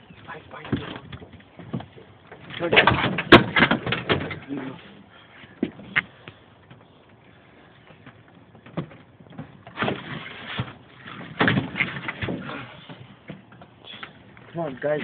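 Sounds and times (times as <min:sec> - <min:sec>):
knocks and thumps: 0:00.6 - 0:04.4, 0:08.1 - 0:13.8.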